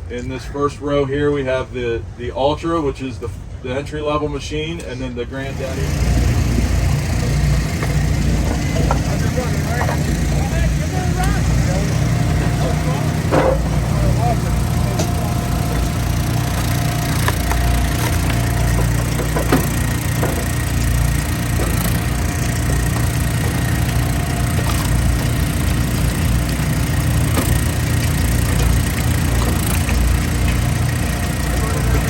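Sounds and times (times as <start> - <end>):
log splitter engine running: 5.3 - 32.0
wood cracking apart: 5.8 - 32.0.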